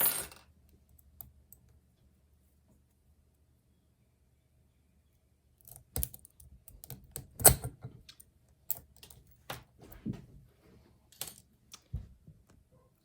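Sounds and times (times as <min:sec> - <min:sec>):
lock picks clicking in padlock: 0:05.6 - 0:07.8.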